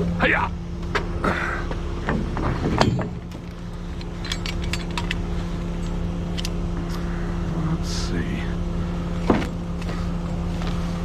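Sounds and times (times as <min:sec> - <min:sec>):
engine idling: 0:00.0 - 0:11.0
metal chain clinking and rattling: 0:02.7 - 0:06.5.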